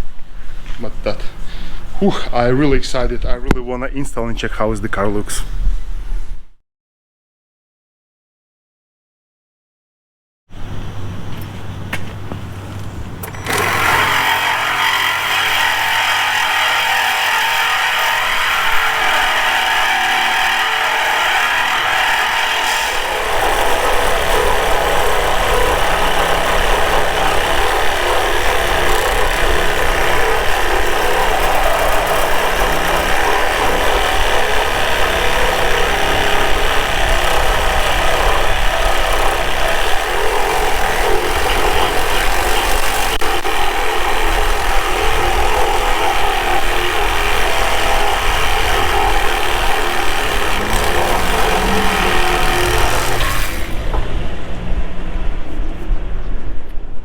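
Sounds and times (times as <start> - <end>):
power saw cutting steel: 10.6 - 55.2.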